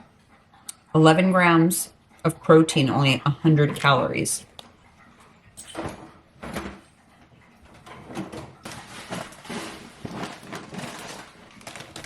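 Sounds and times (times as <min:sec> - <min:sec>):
plastic wrappers rustling: 0:08.6 - 0:12.0.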